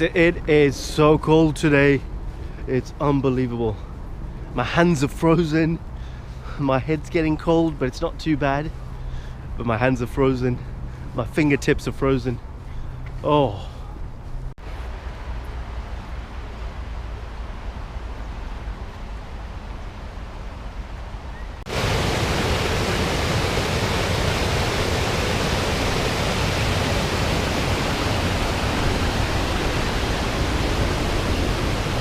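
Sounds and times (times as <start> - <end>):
low outdoor rumble: 0.0 - 32.0
loud steady rushing noise: 14.6 - 32.0.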